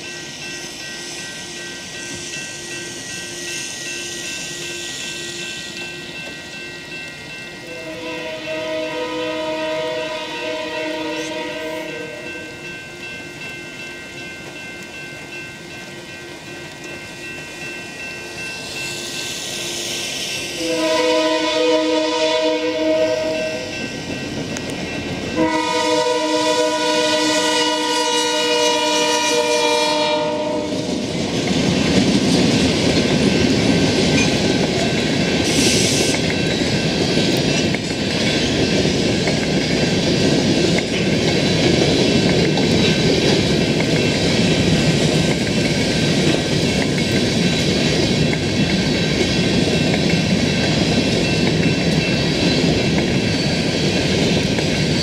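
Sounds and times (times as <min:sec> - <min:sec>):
train cars rumbling past: 0:00.0 - 0:55.0
locomotive air horn: 0:07.6 - 0:12.3, 0:20.6 - 0:23.7, 0:25.4 - 0:30.9.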